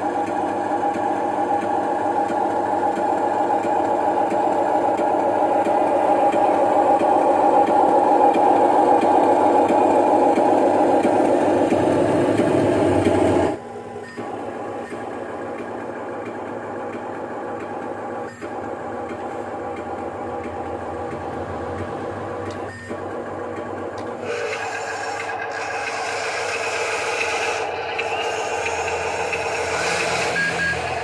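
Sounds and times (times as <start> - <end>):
model motors whining: 23.9 - 31.0.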